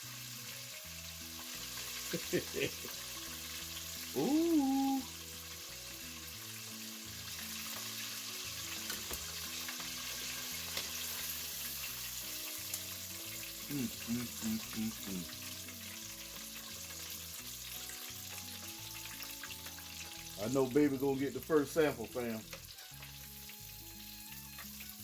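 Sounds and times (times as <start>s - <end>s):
chicken deep-frying in oil: 0.0s - 25.0s
hummed voice: 4.1s - 5.1s, 13.7s - 15.3s.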